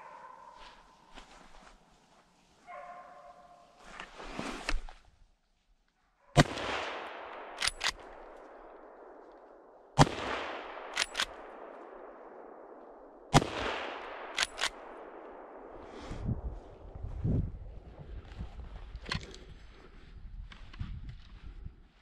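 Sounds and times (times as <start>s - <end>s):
rifle shots with rolling echo: 6.4s - 16.7s
rifle action metallic clicks: 7.3s - 8.8s, 10.8s - 11.5s, 14.3s - 14.9s.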